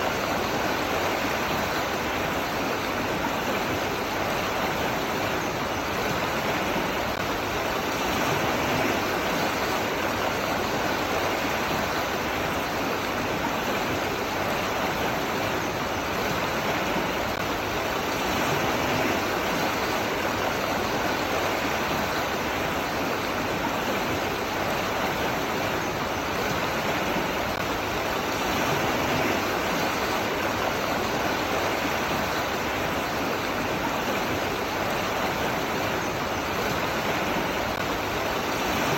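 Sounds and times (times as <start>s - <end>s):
water rushing: 0.0s - 38.9s.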